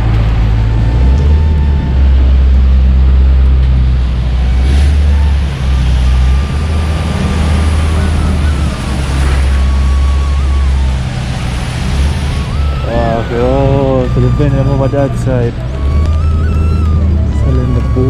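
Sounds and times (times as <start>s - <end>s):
street traffic rumble: 0.0s - 18.0s.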